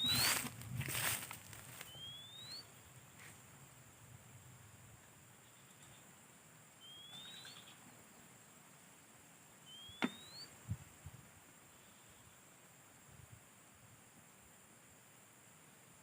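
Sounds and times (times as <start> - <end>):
rising bird whistles: 0.0 - 0.4, 1.9 - 2.8, 6.8 - 7.8, 9.6 - 10.6.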